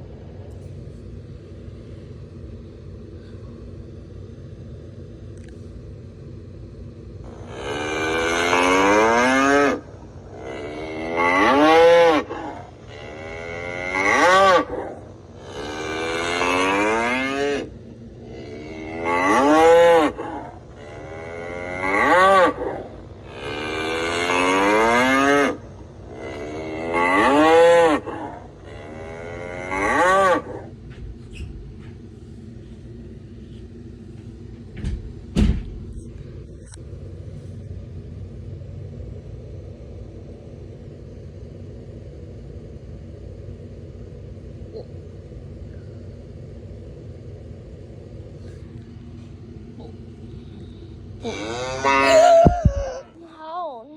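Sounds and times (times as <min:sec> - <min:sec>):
low background rumble: 0:00.0 - 0:53.9
bull bellowing: 0:07.3 - 0:32.0, 0:49.8 - 0:53.3.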